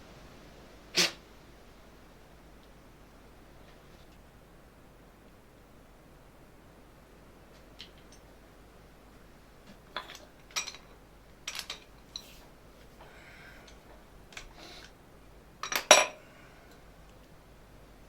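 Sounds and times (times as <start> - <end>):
metal parts and hand tools clinking: 9.9 - 12.3, 15.6 - 16.2.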